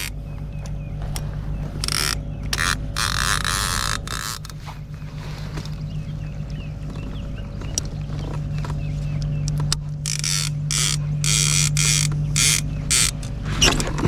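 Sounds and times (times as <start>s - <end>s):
steady low hum: 0.0s - 14.0s
fishing reel drag buzzing: 1.8s - 4.7s, 10.0s - 13.3s.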